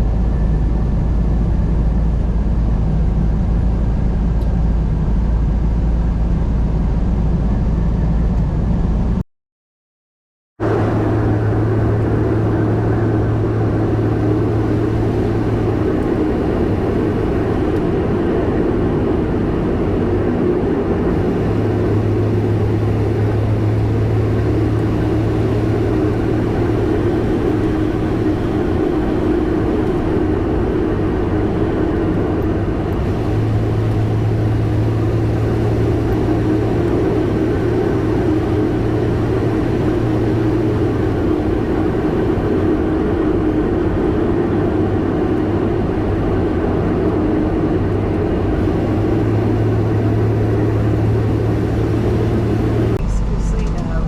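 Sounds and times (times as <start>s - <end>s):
road noise: 0.0s - 9.2s, 10.6s - 54.0s
truck engine droning: 0.0s - 9.2s, 10.6s - 54.0s.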